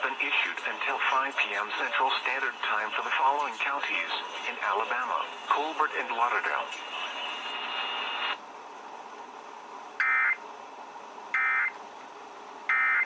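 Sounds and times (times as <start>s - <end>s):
radio hiss: 0.0s - 8.4s.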